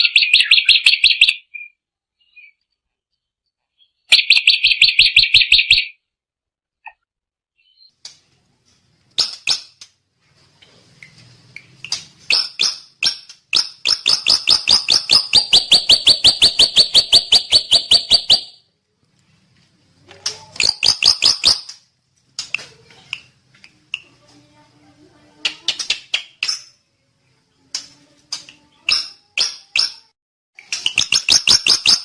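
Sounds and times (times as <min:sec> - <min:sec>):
bird chirping rapidly: 0:00.0 - 0:02.6, 0:03.7 - 0:06.0, 0:07.6 - 0:08.0, 0:12.3 - 0:18.6, 0:20.6 - 0:21.7, 0:30.9 - 0:32.0.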